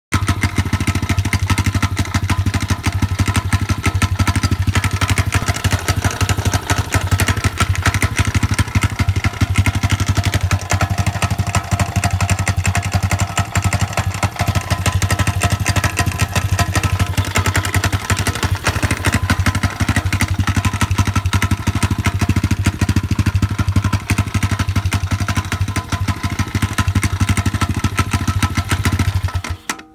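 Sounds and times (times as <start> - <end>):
engine knocking: 0.1 - 29.7
motorcycle engine idling: 0.2 - 29.9.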